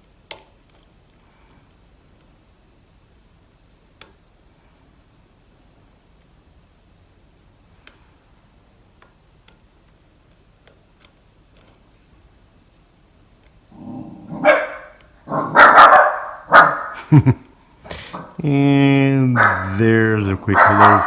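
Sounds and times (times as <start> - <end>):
dog barking: 14.2 - 17.1, 18.0 - 18.4, 19.4 - 19.7, 20.5 - 21.0.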